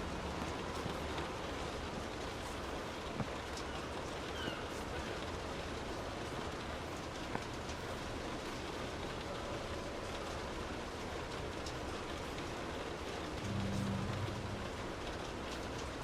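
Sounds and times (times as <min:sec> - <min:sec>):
rain drumming on car roof: 0:00.0 - 0:16.0
raindrops ticking: 0:00.0 - 0:16.0
low hum: 0:13.3 - 0:15.6.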